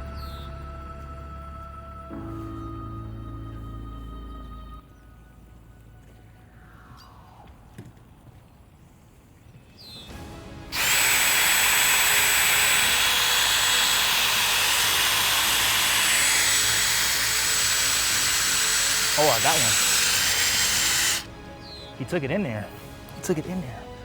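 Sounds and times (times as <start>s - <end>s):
power drill whining: 10.7s - 21.3s.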